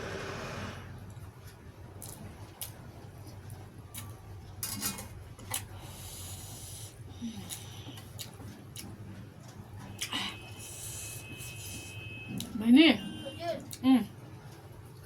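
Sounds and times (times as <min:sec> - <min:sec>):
person chewing: 0:02.0 - 0:02.8, 0:05.5 - 0:09.0.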